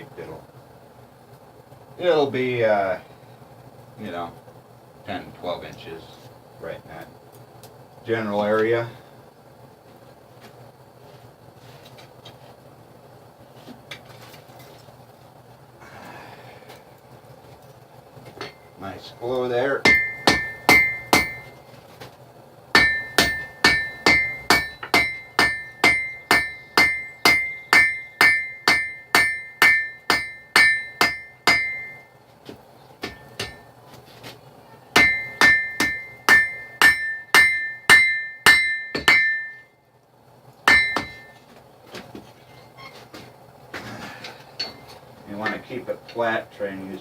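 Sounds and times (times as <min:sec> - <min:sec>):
hammer striking steel on anvil: 0:19.8 - 0:21.6, 0:22.8 - 0:32.0, 0:33.0 - 0:33.7, 0:35.0 - 0:39.7, 0:40.7 - 0:41.4, 0:44.6 - 0:45.6.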